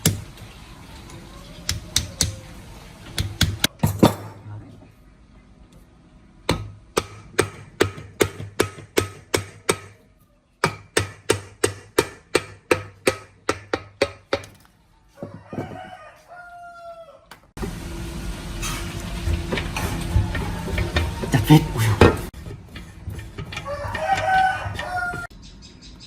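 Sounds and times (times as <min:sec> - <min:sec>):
rooster crowing: 0:15.1 - 0:17.4, 0:19.7 - 0:22.0, 0:23.5 - 0:25.3.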